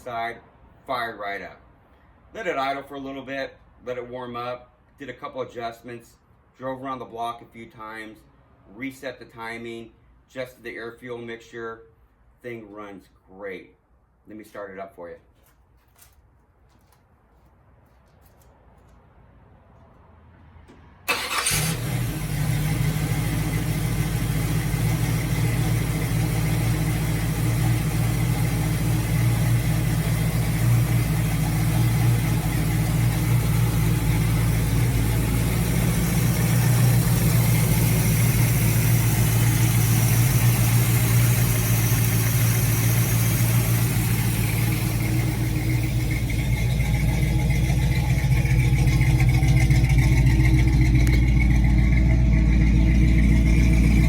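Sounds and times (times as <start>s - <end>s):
car engine idling: 21.1s - 54.0s.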